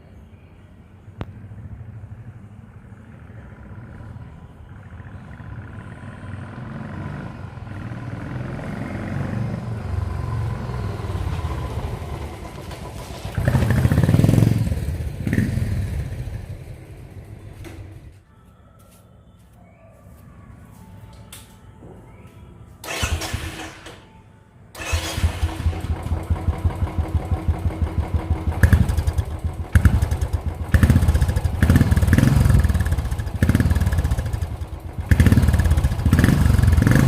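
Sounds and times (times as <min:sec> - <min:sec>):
single-cylinder motorcycle engine thumping: 0:25.2 - 0:37.0.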